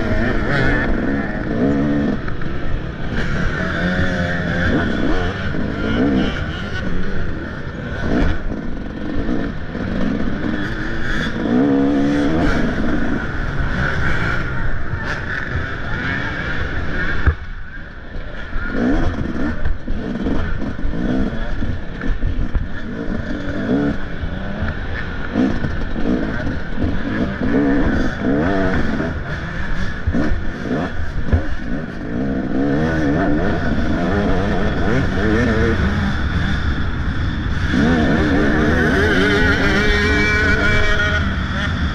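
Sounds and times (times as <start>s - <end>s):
dirt bike engine revving: 0.0s - 41.9s.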